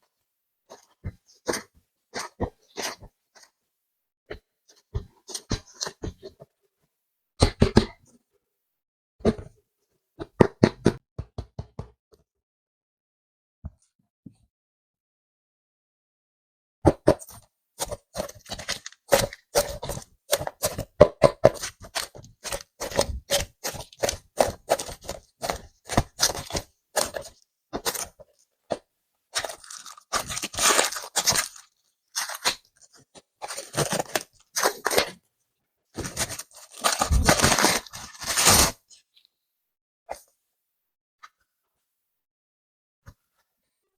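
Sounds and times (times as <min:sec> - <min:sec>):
packaging rustling: 0:17.8 - 0:20.6, 0:21.6 - 0:28.1, 0:29.4 - 0:35.1, 0:36.0 - 0:38.7
packaging crackling: 0:29.4 - 0:32.6, 0:33.4 - 0:35.0, 0:36.0 - 0:38.7.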